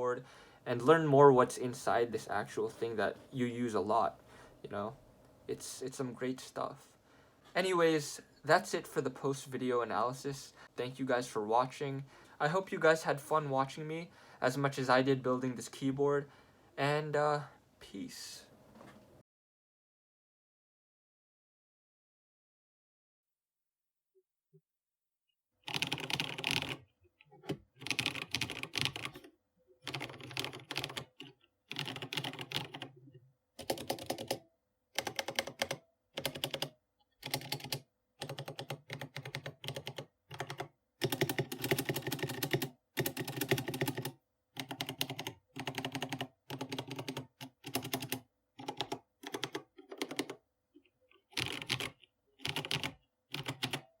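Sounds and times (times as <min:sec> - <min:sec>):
mechanical keyboard typing: 0:25.7 - 0:33.0, 0:33.6 - 0:34.4, 0:35.0 - 0:50.4, 0:51.2 - 0:53.9.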